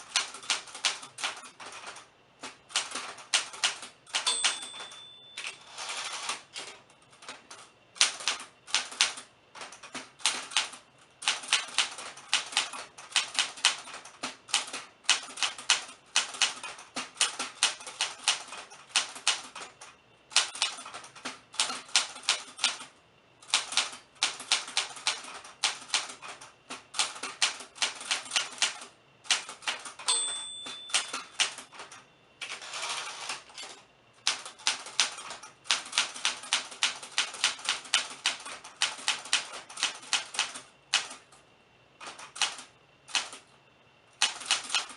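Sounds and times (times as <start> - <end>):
typewriter typing: 0.0 - 41.4, 42.0 - 43.5, 44.2 - 44.9
typewriter bell ding: 4.1 - 6.3, 30.0 - 31.6.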